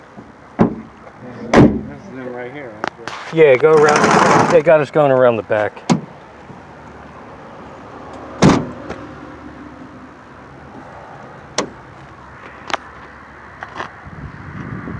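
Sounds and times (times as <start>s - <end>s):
steady vehicle hum: 0.0s - 14.9s
vehicle door shutting: 0.6s - 2.0s, 8.4s - 9.0s.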